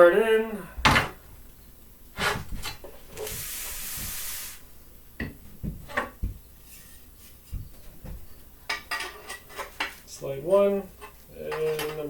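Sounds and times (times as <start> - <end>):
steady hiss: 2.9 - 5.0.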